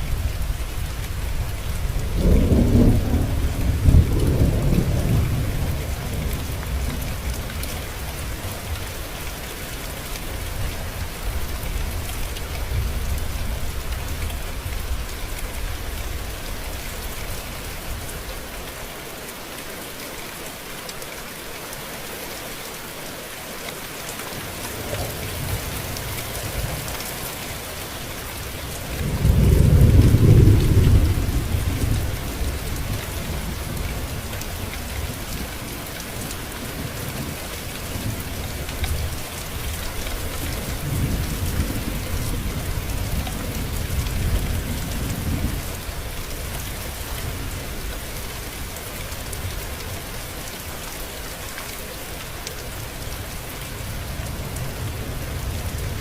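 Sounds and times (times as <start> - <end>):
steady rain: 0.0 - 56.0
thunder rolling: 2.0 - 6.2, 29.0 - 32.6.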